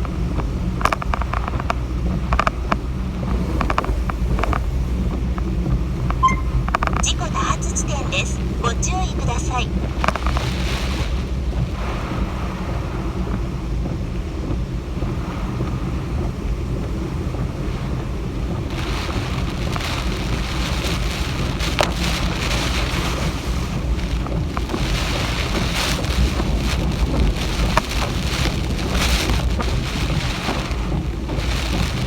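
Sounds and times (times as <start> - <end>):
heavy rain hissing: 7.0 - 12.9, 17.6 - 32.0
wind gusts buffeting microphone: 10.1 - 32.0.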